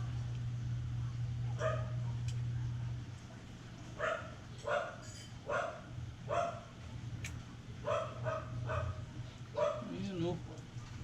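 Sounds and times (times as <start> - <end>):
dog barking: 1.6 - 2.2, 4.0 - 6.7, 7.8 - 10.0.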